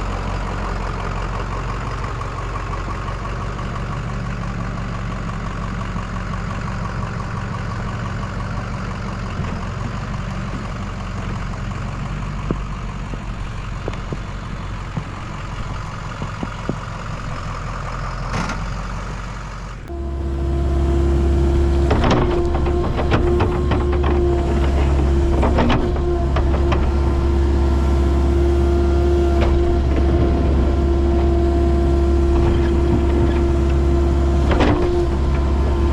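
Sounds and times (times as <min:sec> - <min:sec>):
diesel engine running: 0:00.0 - 0:35.9
deep steady drone: 0:19.7 - 0:35.9
metal knocks and clanks: 0:21.5 - 0:27.5, 0:32.2 - 0:35.9.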